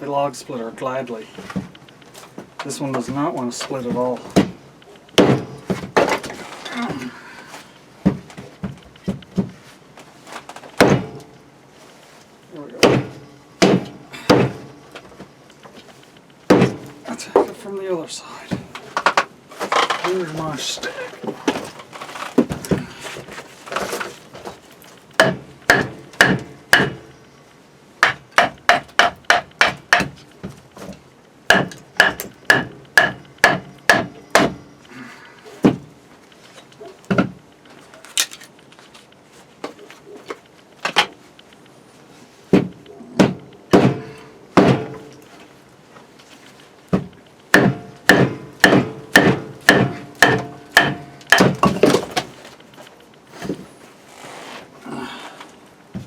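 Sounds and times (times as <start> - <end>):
blade pounded into log: 5.2 - 6.2, 10.8 - 11.2, 12.8 - 14.6, 25.2 - 27.0, 42.6 - 45.1, 47.5 - 52.3.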